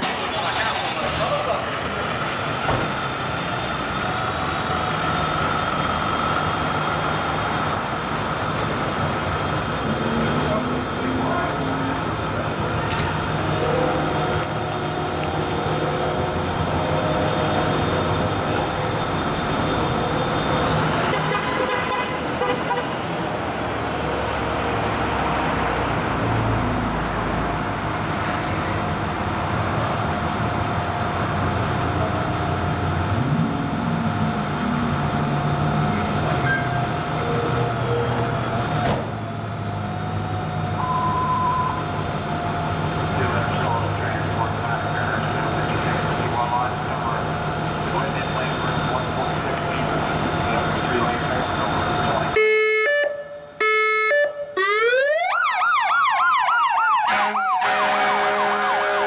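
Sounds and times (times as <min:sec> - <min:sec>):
truck engine and road noise: 0:00.0 - 0:59.0
ambulance air horns: 0:20.9 - 0:23.1, 0:52.4 - 0:54.6, 0:56.8 - 0:59.0.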